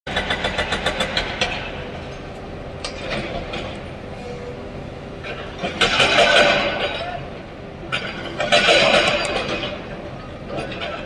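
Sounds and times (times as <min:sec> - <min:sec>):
excavator diesel engine running: 0:00.1 - 0:11.0
rapid metallic clanks: 0:07.9 - 0:11.0.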